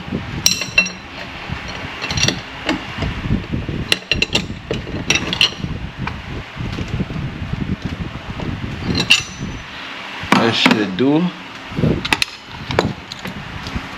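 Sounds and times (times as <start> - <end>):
wrench and metal parts clinking: 0.4 - 2.8, 3.9 - 5.6, 8.8 - 9.7.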